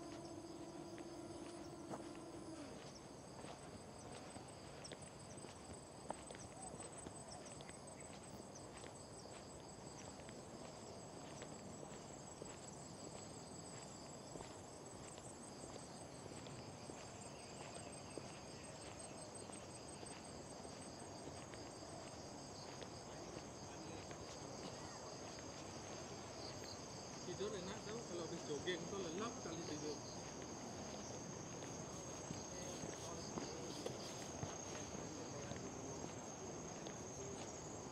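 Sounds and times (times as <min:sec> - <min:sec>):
insects trilling: 0:00.0 - 0:37.9
soft footsteps on trail: 0:00.0 - 0:37.9.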